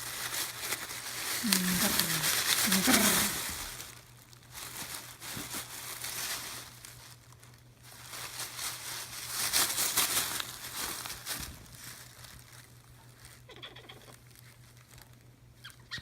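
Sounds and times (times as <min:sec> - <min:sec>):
paper crinkling: 0:00.0 - 0:15.3.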